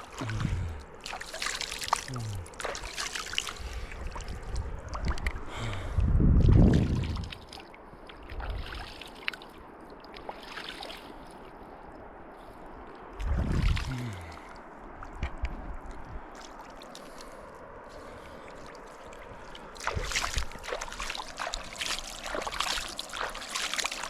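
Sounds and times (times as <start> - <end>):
low rumbles: 0.0 - 1.0, 3.6 - 7.5, 13.1 - 14.5
river water flowing: 0.0 - 24.0.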